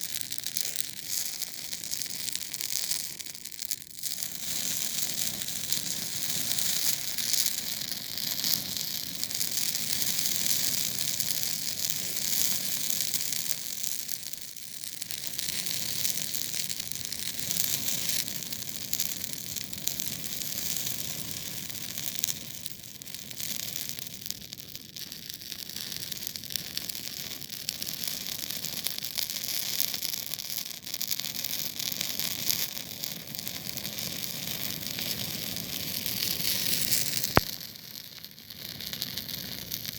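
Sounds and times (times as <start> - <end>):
campfire crackling and hissing: 0.0 - 39.9.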